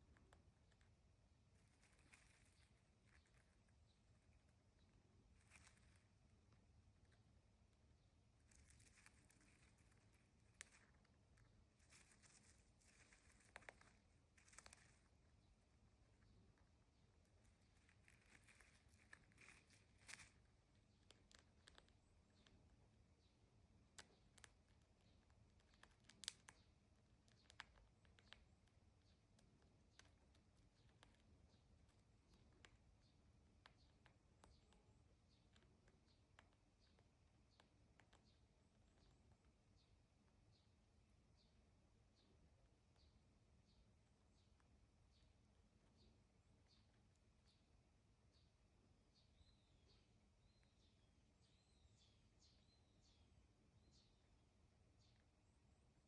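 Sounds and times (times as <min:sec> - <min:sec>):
bird pecking and husking seeds: 0:00.0 - 0:56.0
bird beak cracking seed hulls: 0:08.5 - 0:15.1, 0:17.9 - 0:22.6, 0:25.6 - 0:26.6.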